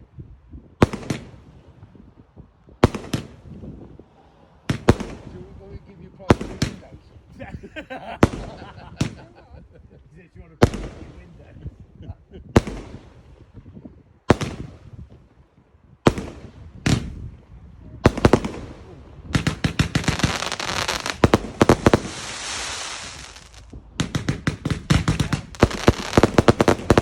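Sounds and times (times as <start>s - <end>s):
fireworks bangs: 0.8s - 4.0s, 4.6s - 27.0s
hissing crackle of fireworks: 10.6s - 15.2s, 16.0s - 27.0s.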